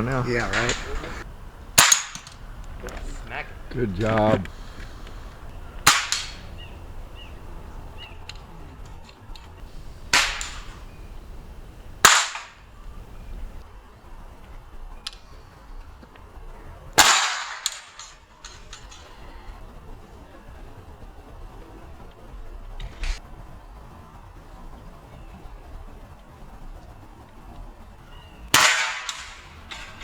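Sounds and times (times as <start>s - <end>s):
pellet rifle shots: 0.0s - 8.5s, 9.6s - 13.6s, 17.0s - 18.9s, 28.5s - 30.0s.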